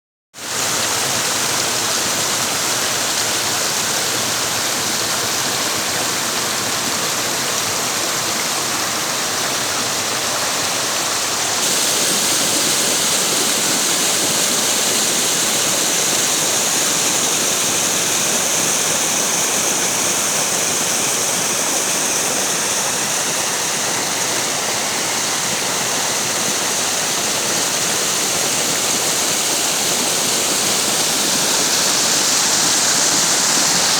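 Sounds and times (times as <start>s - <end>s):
water rushing and falling: 0.4s - 33.9s.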